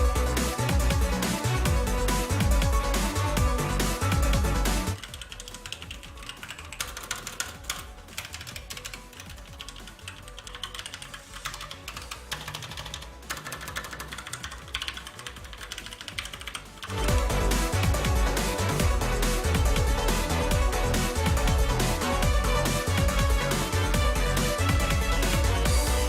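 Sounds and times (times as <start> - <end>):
background music: 0.0 - 26.0
mechanical keyboard typing: 5.0 - 17.0.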